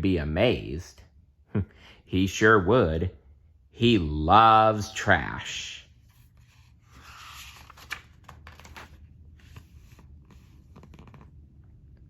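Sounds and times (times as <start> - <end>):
paper page rustling: 6.0 - 11.3.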